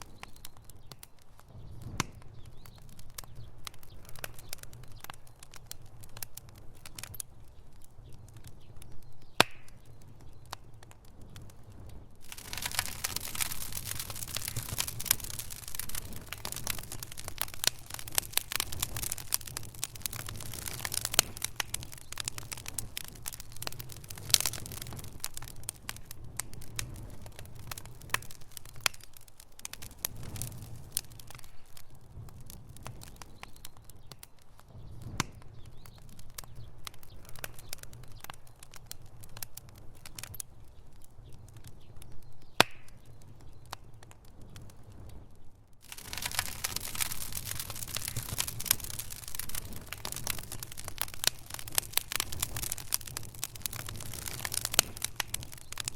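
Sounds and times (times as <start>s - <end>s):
low fire rumble: 0.0s - 55.9s
wood fire crackling and popping: 0.0s - 55.9s.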